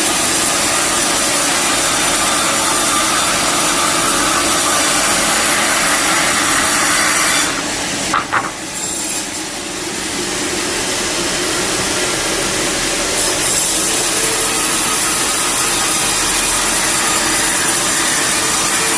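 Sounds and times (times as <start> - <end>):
saw cutting through wood: 0.0 - 18.9.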